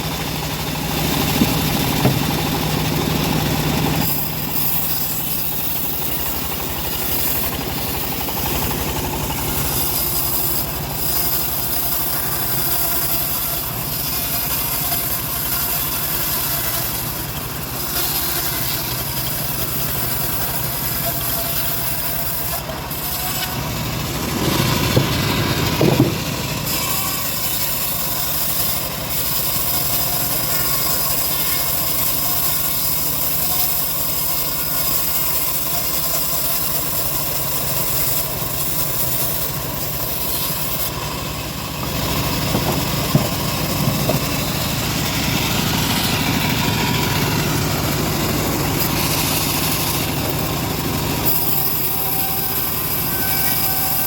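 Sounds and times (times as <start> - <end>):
bandsaw cutting wood: 0.0 - 54.0.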